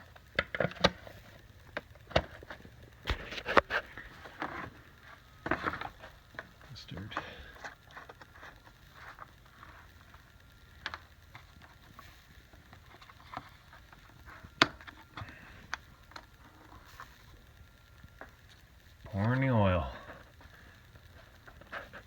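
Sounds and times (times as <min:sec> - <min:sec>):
plastic bottles and funnel clicking: 0:00.0 - 0:17.3.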